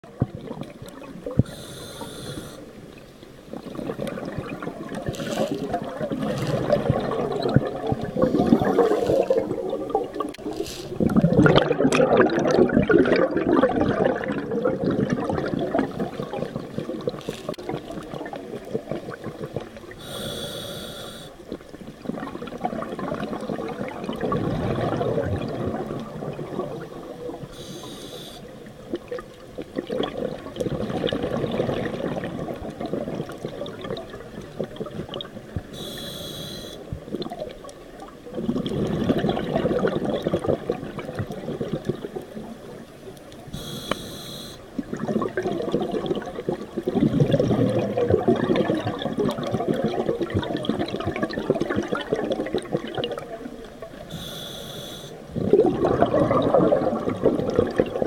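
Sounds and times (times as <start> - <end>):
bubbling exhaled air: 0.3 - 2.7, 3.6 - 29.2, 29.8 - 37.4, 38.3 - 42.4, 43.5 - 53.3, 54.0 - 58.0
regulator hissing inhales: 1.5 - 2.7, 8.4 - 9.3, 20.0 - 21.4, 27.6 - 28.5, 35.8 - 36.8, 43.6 - 44.6, 54.1 - 55.2.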